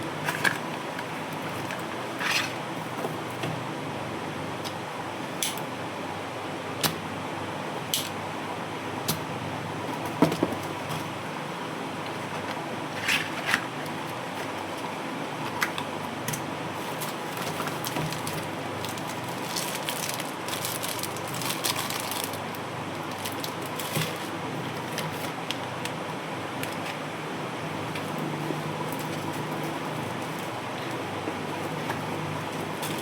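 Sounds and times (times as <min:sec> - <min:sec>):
steady background hum: 0:00.0 - 0:33.0
packaging crinkling: 0:16.9 - 0:26.0.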